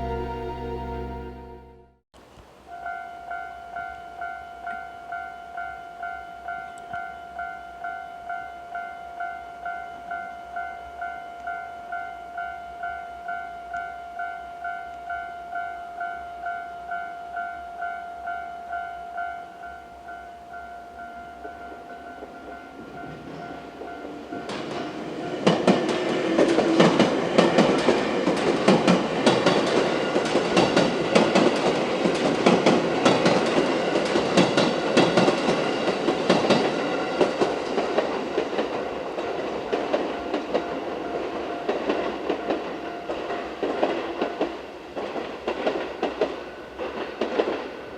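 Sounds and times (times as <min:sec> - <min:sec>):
level-crossing bell ringing: 0:00.0 - 0:01.8, 0:02.7 - 0:25.5
train wheels clicking over rail joints: 0:22.2 - 0:47.9.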